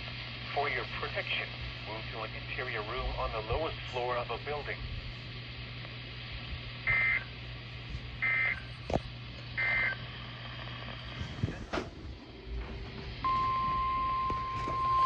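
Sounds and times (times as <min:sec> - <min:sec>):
radio hiss and hum: 0:00.0 - 0:15.0
steady warning alarm tone: 0:06.8 - 0:07.4, 0:08.2 - 0:08.8, 0:09.6 - 0:10.1, 0:12.2 - 0:15.0.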